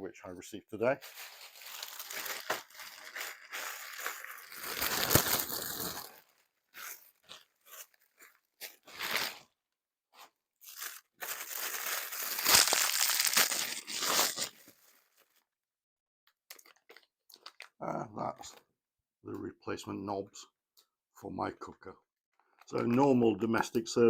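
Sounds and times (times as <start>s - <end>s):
wrapping tearing and crinkling: 1.0s - 9.6s, 10.6s - 15.4s.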